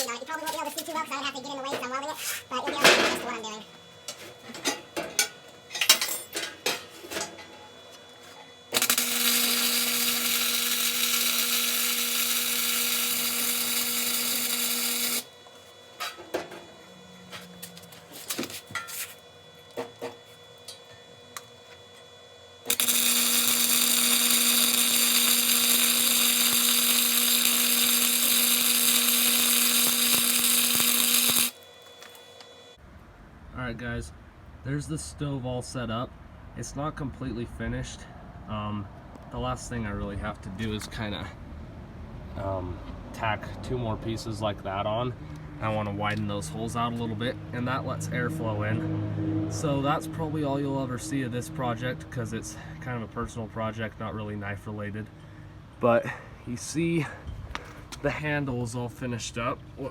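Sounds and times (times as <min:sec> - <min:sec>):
arc welding crackling hiss: 0:08.7 - 0:15.4, 0:22.6 - 0:32.3.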